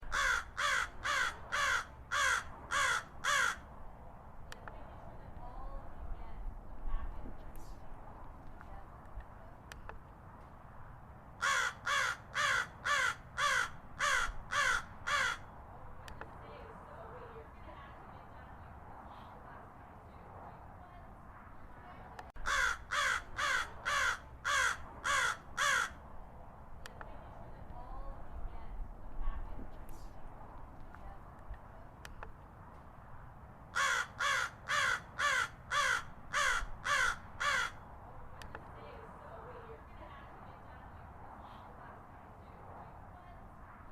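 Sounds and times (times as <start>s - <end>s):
crow cawing: 0.0s - 3.7s, 11.4s - 15.5s, 22.4s - 26.0s, 33.7s - 37.8s.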